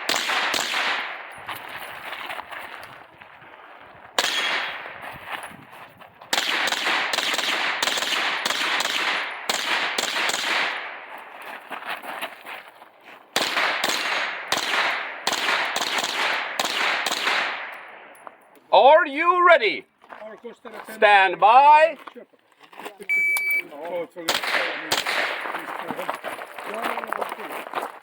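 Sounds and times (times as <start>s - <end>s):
carbine gunshots: 0.0s - 1.4s, 4.2s - 5.0s, 6.3s - 11.1s, 13.4s - 18.1s, 24.3s - 25.6s.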